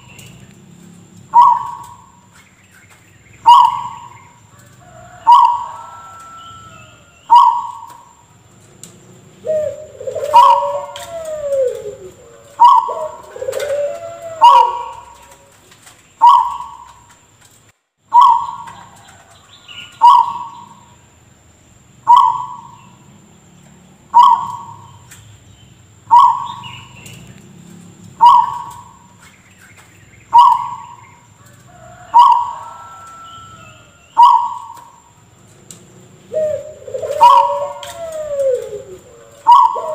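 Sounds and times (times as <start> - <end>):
gliding bird calls: 1.3 - 8.2, 9.0 - 17.2, 18.1 - 21.0, 22.0 - 23.1, 24.0 - 35.2, 36.0 - 39.9
dove cough-like call: 36.3 - 39.9.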